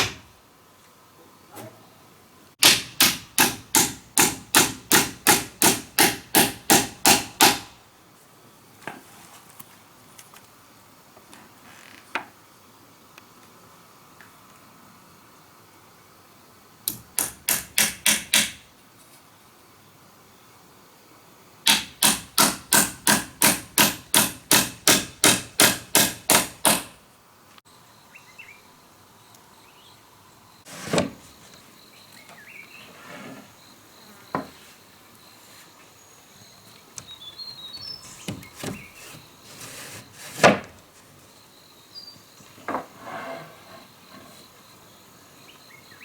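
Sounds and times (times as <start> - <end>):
hammer striking wood: 0.0 - 0.3, 2.6 - 7.7, 16.9 - 18.6, 21.7 - 27.0
insects buzzing: 9.6 - 46.0
bird chirping: 27.9 - 30.0, 30.6 - 33.0, 33.6 - 39.4, 41.3 - 42.7, 43.7 - 46.0.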